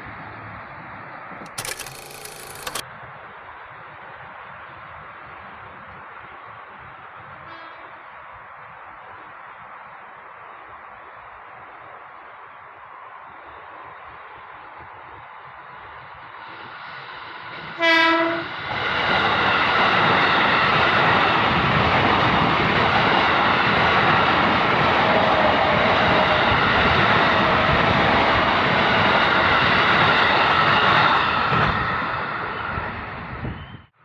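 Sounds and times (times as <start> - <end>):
electric train passing: 0.1 - 33.5
train horn blast: 7.4 - 8.1, 17.8 - 18.6.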